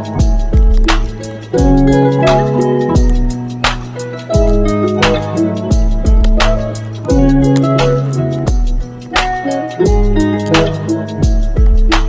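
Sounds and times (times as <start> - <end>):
background music with steady beat: 0.0 - 12.0.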